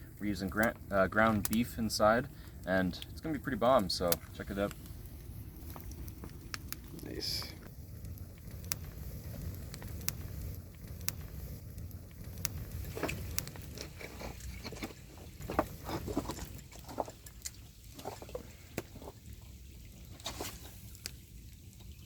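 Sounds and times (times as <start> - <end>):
campfire crackling and popping: 0.0 - 22.0
low rumble: 3.0 - 14.8.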